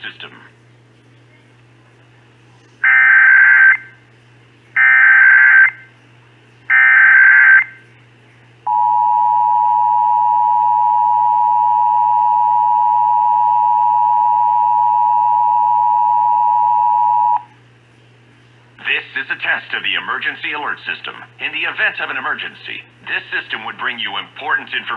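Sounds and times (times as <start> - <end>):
loud steady dual tone: 2.8 - 4.1, 4.8 - 6.0, 6.7 - 8.0, 8.6 - 17.7.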